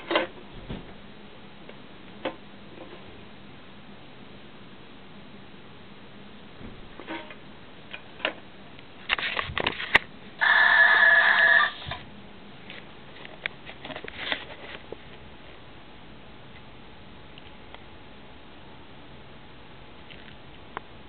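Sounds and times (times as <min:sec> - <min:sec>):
electronic buzz tone: 0:10.4 - 0:12.0.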